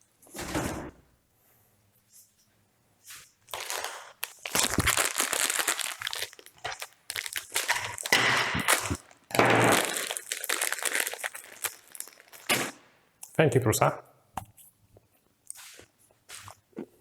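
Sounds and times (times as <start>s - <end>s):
packaging crinkling and crumpling: 3.5s - 12.8s.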